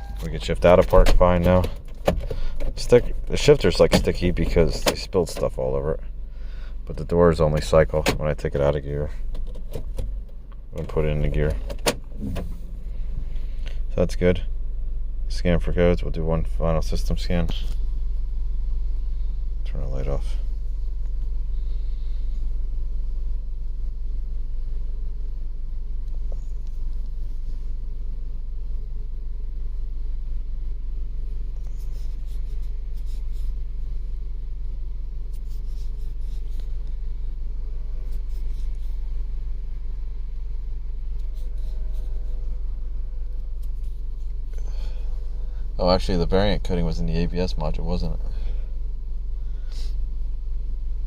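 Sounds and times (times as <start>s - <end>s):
car engine idling: 0.0s - 51.0s.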